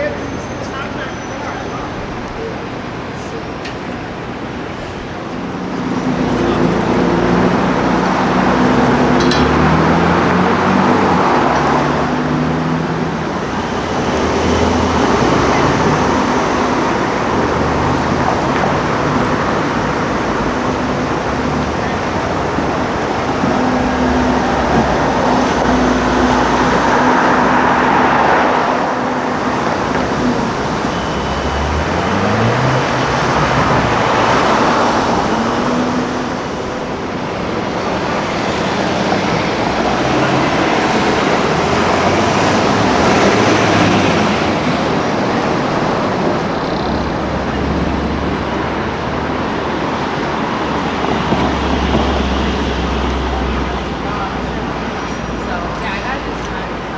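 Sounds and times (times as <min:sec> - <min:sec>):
car accelerating: 0:00.0 - 0:56.9
vehicles passing: 0:00.0 - 0:56.9.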